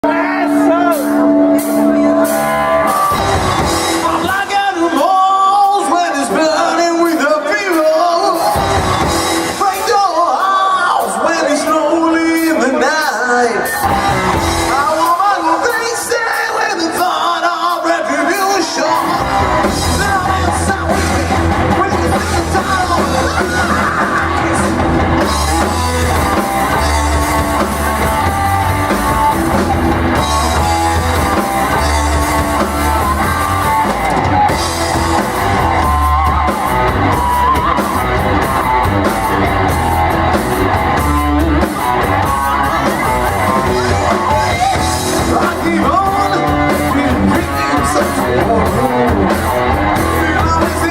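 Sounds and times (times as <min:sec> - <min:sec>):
deep bass line: 0:00.0 - 0:04.6, 0:13.8 - 0:15.1, 0:18.9 - 0:50.9
drum kit: 0:00.0 - 0:50.9
electric guitar: 0:00.0 - 0:50.9
person singing: 0:14.6 - 0:38.8, 0:40.8 - 0:50.9.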